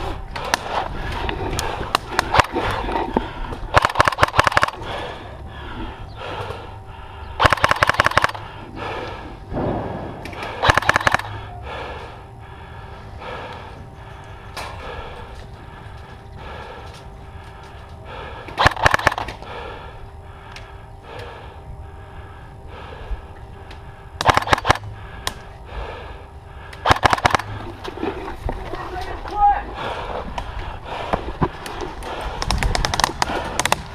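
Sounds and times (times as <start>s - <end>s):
airsoft gun bursts: 3.7s - 5.0s, 7.4s - 8.5s, 10.3s - 11.8s, 18.6s - 19.4s, 24.2s - 24.9s, 26.8s - 27.6s, 32.3s - 33.9s.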